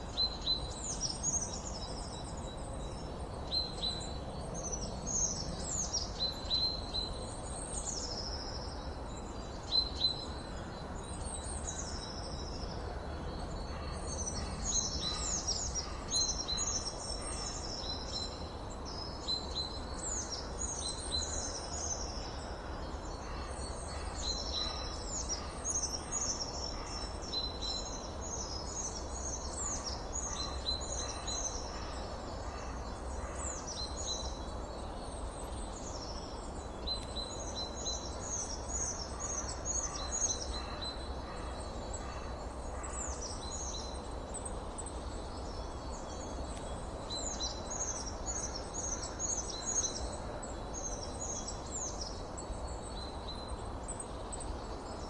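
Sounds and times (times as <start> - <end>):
songbirds singing: 0.0 - 55.0.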